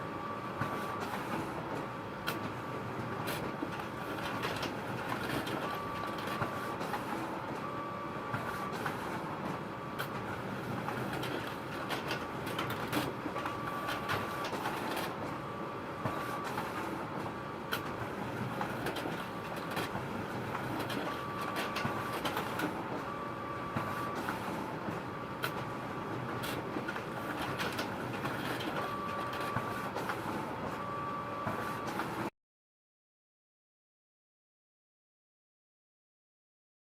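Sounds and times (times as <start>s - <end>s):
photocopier whirring: 0.0s - 32.3s.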